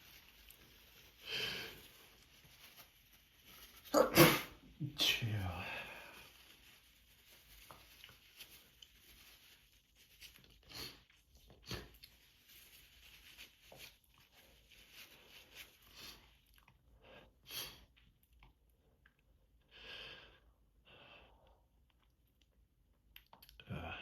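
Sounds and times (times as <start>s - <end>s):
tissue crinkling and rustling: 0.0s - 4.0s, 4.6s - 16.5s.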